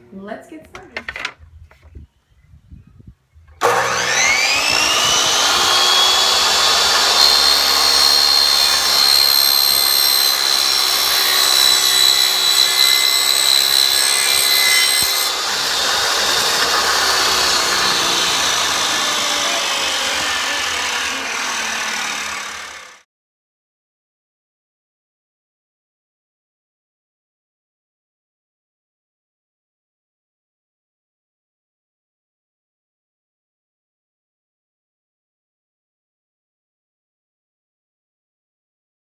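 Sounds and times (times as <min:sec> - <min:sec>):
miter saw motor whining: 0:03.6 - 0:23.0.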